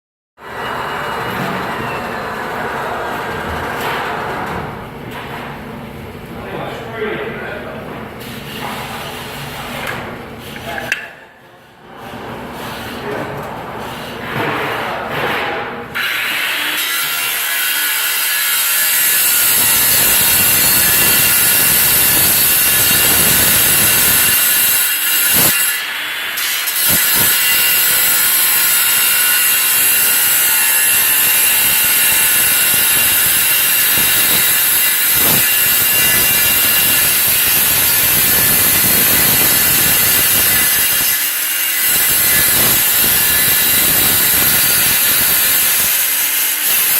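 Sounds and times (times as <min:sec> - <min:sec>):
power tool cutting pipe: 0:16.0 - 0:46.9.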